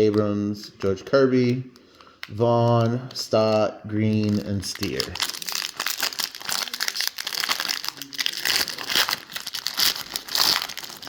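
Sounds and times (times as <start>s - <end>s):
wrapper tearing and crinkling: 2.6s - 11.0s.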